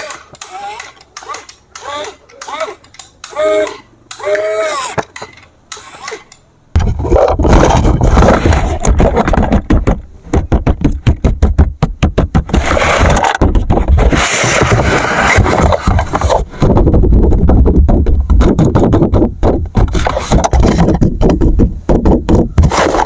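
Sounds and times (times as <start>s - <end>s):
objects scraping and rustling: 4.8s - 9.9s, 12.5s - 16.8s, 19.8s - 21.1s.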